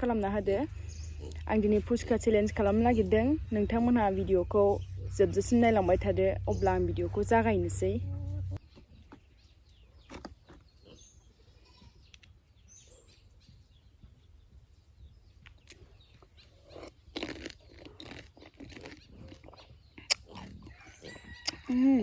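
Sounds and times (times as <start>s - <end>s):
crunching and chewing: 0.6s - 2.6s, 8.3s - 11.4s, 15.4s - 22.0s.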